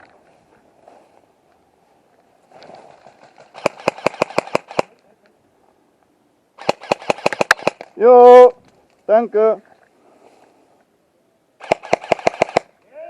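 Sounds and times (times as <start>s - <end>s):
airsoft gun firing rapid shots: 3.5s - 4.9s, 6.6s - 7.9s, 11.6s - 12.7s.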